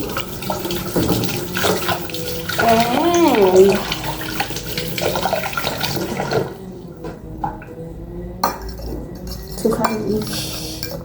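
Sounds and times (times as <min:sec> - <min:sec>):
water running from a tap: 0:00.0 - 0:06.7
dishes clinking: 0:08.4 - 0:11.0.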